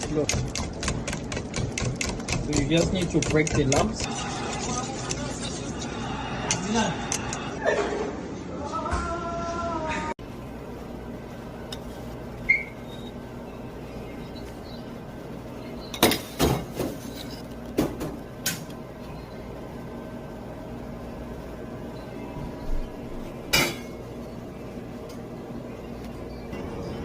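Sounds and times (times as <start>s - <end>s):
steady background hum: 0.0s - 27.0s
utensils clinking against dishes: 23.5s - 24.0s.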